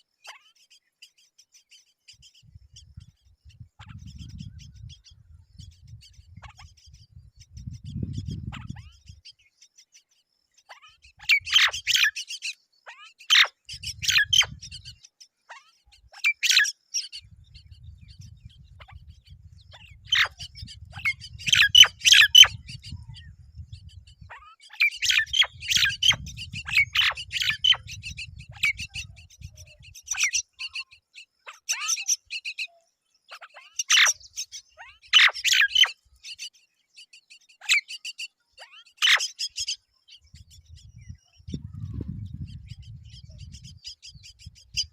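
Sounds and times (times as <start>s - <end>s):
myna birds chirping: 0.0s - 44.9s.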